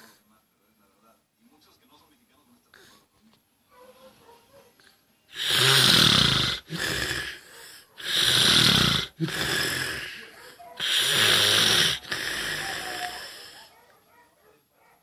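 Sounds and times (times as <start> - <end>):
person snoring: 5.3 - 13.7.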